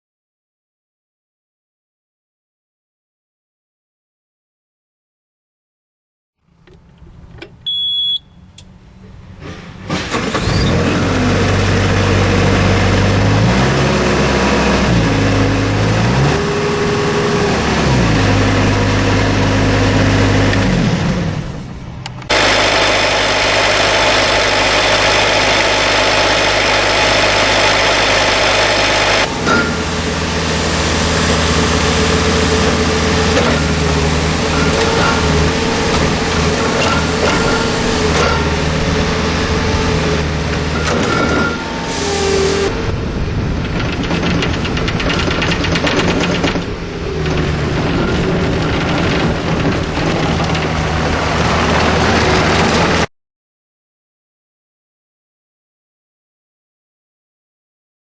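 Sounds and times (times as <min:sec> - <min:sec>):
diesel engine starting and revving: 0:06.4 - 0:53.1
short beep: 0:07.6 - 0:08.5.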